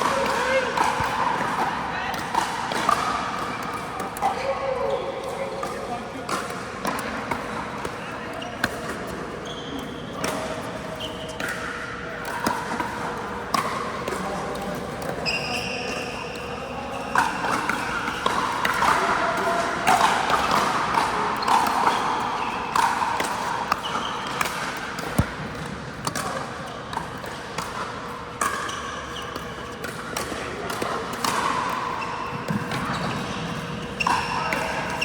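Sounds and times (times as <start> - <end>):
paddles hitting plastic ball: 22.8 - 26.4.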